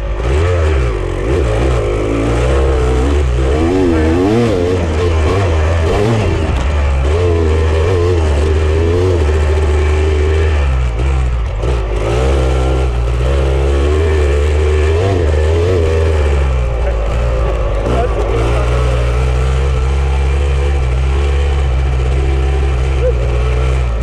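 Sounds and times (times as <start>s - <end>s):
off-road vehicle engine revving: 0.0s - 24.0s.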